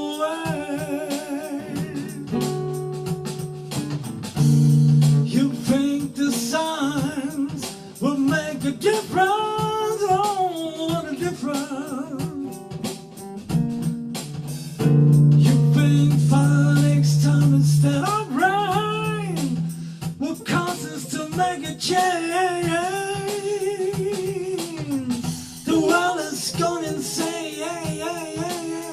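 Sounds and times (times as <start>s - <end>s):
person singing: 0.0s - 2.8s, 5.2s - 12.8s, 15.3s - 28.9s
guitar chords: 0.0s - 28.9s.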